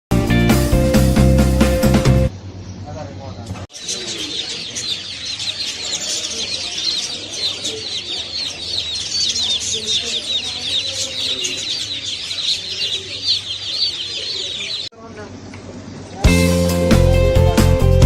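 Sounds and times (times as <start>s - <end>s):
fainter low bird calls: 2.3s - 16.2s
caged birds chirping: 2.3s - 16.5s.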